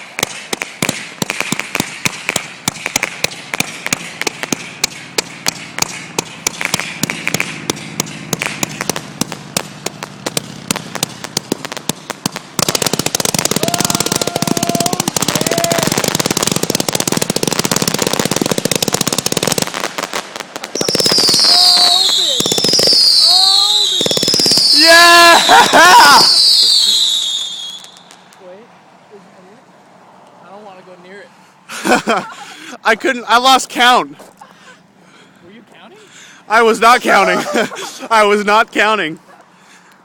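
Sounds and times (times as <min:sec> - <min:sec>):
firework cake shots and bursts: 0:00.0 - 0:28.4
firework crackling barrage: 0:00.0 - 0:28.4.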